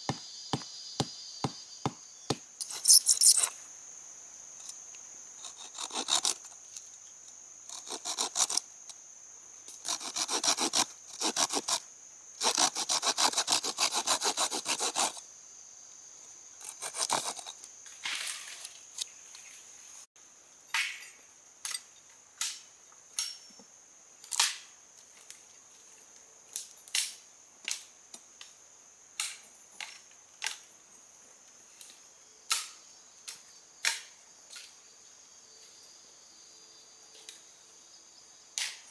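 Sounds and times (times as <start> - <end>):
sharp knocks: 0.1 - 2.5
hand saw cutting wood: 5.4 - 6.6, 7.7 - 8.6, 9.8 - 11.8, 12.4 - 15.2, 16.6 - 17.6.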